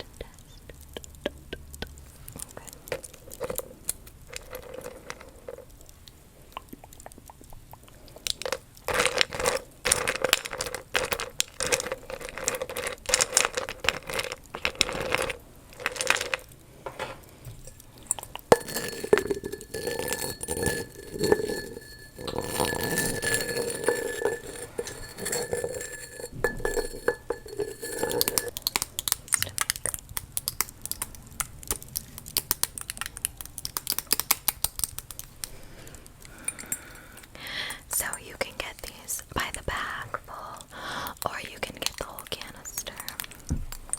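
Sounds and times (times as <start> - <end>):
candy clinking against glass jar: 1.8 - 5.9, 6.6 - 16.6, 17.6 - 35.5, 36.2 - 43.9
faint glassy ringing: 17.6 - 28.5.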